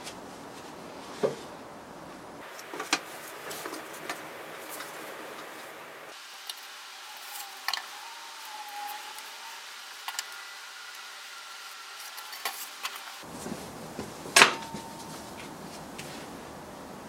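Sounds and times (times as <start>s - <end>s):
wood and tools clicking and knocking: 2.4s - 5.5s.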